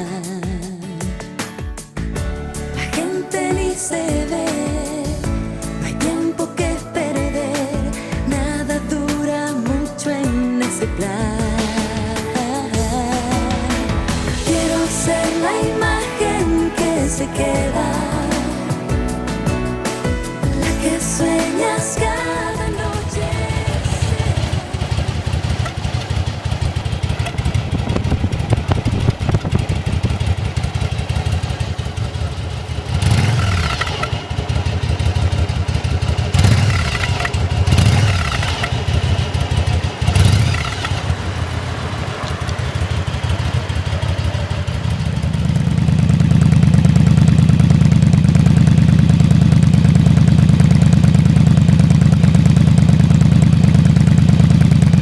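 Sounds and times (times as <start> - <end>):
motorcycle engine idling and revving: 1.9 - 55.0.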